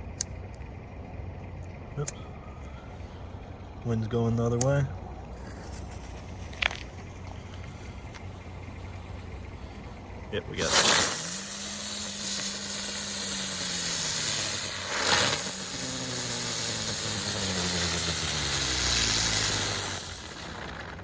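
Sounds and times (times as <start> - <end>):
fireworks hissing spray of sparks: 10.6 - 21.0.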